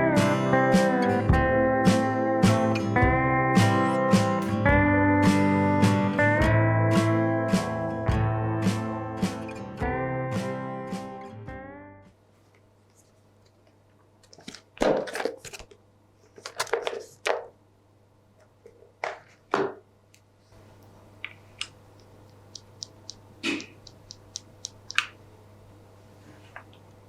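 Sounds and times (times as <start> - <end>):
mechanical keyboard clacks: 22.3 - 25.1.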